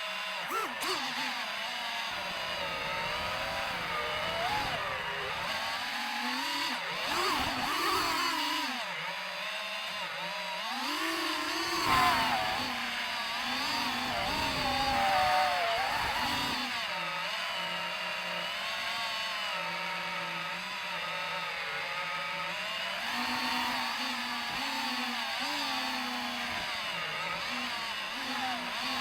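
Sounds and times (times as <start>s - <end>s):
drone propellers whining: 0.2s - 9.2s, 10.8s - 18.3s.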